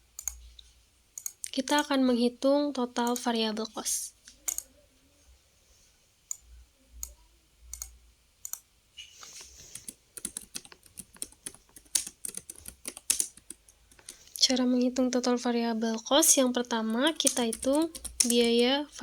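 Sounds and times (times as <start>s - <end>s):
typing on computer keyboard: 4.4s - 4.7s, 9.6s - 14.2s, 16.9s - 18.6s.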